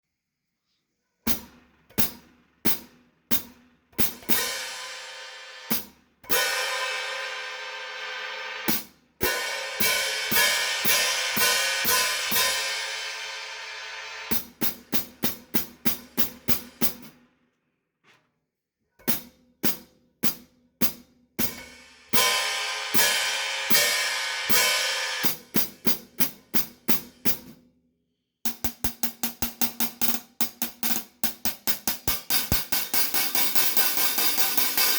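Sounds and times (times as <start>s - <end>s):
cymbal hits ringing: 4.3s - 14.5s, 21.5s - 25.5s.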